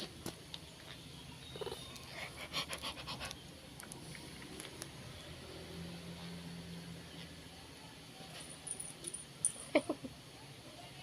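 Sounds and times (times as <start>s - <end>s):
animal panting: 1.7s - 3.4s.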